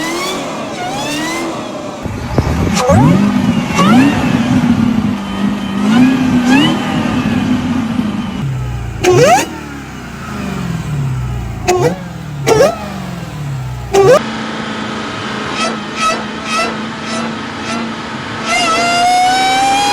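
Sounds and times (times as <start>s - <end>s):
engine blipped with whine: 0.0s - 14.2s
supercharged car engines revving: 0.0s - 14.2s, 15.0s - 19.9s.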